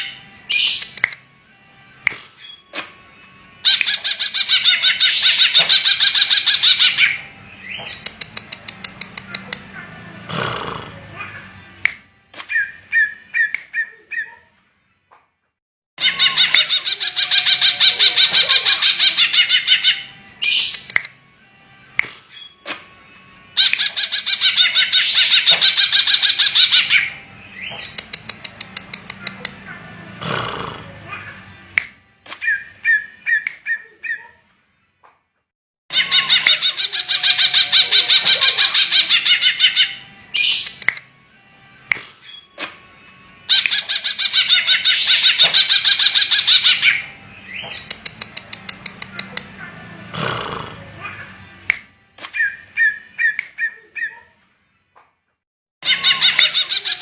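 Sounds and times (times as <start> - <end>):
sharp clicks: 7.8 - 9.6, 27.8 - 29.6, 40.6 - 41.0, 47.7 - 49.5.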